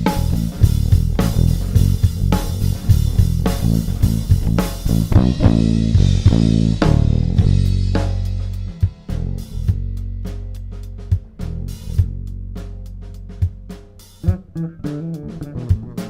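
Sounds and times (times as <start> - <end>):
guitar: 0.0 - 9.8, 14.2 - 16.0
bass guitar: 0.0 - 16.0
drum hits: 0.0 - 16.0.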